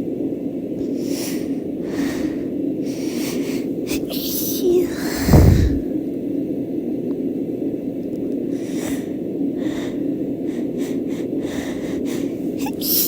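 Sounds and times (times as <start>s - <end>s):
quiet breaths: 0.7s - 6.0s, 8.4s - 13.0s.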